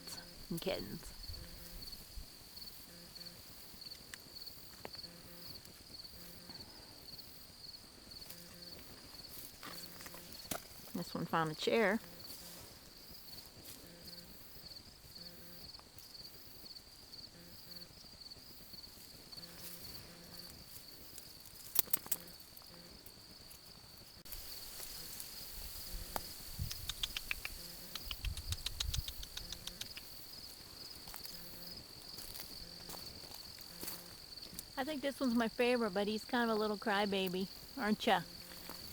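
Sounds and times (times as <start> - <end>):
crickets chirring: 0.0 - 38.9
sharp clicks: 21.6 - 22.3, 26.1 - 30.1.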